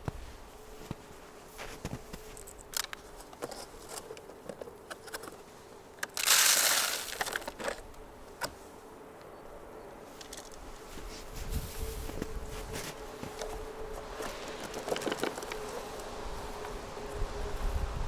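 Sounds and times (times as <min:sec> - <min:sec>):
snow shovel scraping wet snow: 0:06.2 - 0:07.4.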